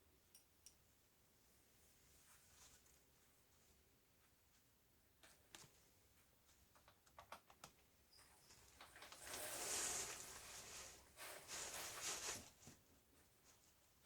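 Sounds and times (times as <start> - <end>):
laptop clicks and taps: 6.8 - 7.8
rustling or scraping: 8.3 - 12.8.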